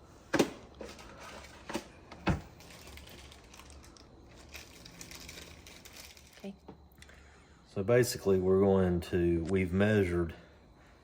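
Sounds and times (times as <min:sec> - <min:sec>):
rustling and crinkling of plastic: 0:00.8 - 0:06.7.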